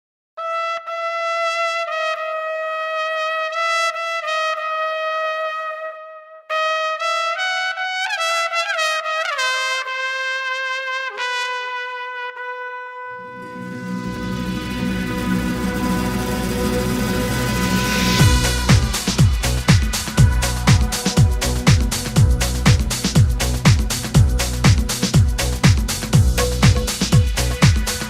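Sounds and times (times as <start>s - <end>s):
solo brass-like melody: 0.4s - 28.0s
electronic music with heavy bass: 13.3s - 28.0s.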